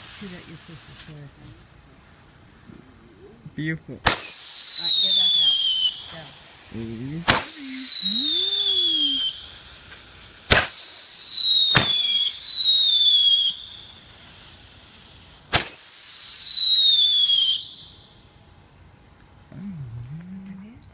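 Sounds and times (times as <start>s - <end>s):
firework crack: 0.0s - 20.3s
firework whistling shriek: 2.4s - 18.4s.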